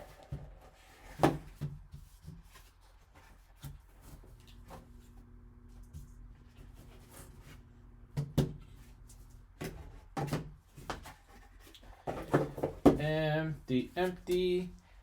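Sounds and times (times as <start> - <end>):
faint low hum: 4.1 - 10.0.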